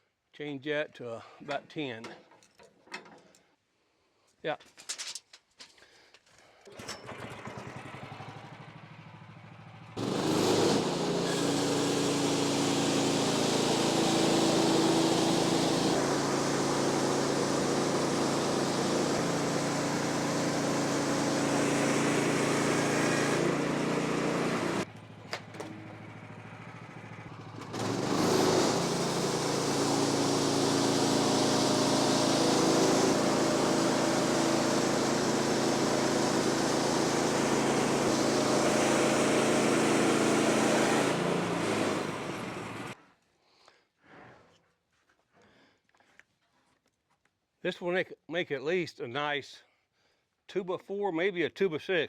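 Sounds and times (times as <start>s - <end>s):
sawmill engine running: 10.0s - 43.0s.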